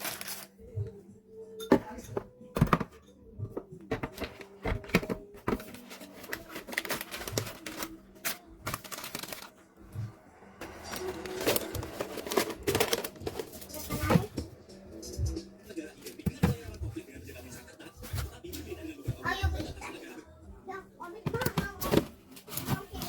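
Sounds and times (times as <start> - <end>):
snack packages crinkling: 0.0 - 0.6, 4.1 - 9.6, 10.6 - 14.2.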